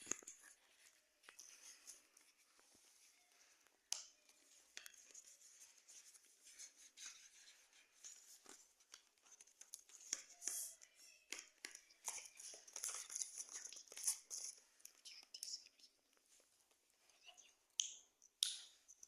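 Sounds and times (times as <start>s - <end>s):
small clicks and ticks: 8.5s - 16.2s.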